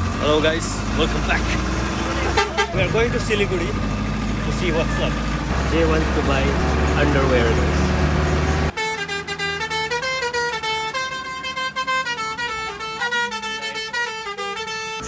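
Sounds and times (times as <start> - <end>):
horn-like tune: 2.1 - 3.2, 8.5 - 15.0.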